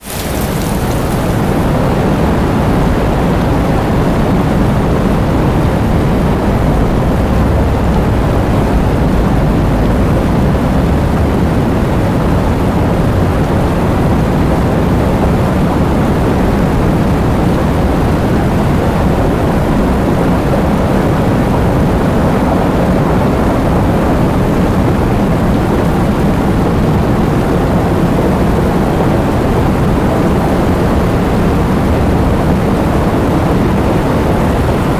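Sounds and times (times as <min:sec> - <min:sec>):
heavy rain pouring: 0:00.0 - 0:34.9
deep low rumble: 0:00.9 - 0:15.4.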